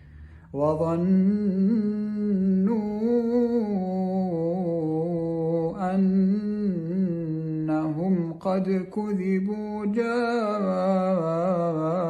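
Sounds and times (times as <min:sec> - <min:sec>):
man chanting melodically: 0:00.4 - 0:12.0.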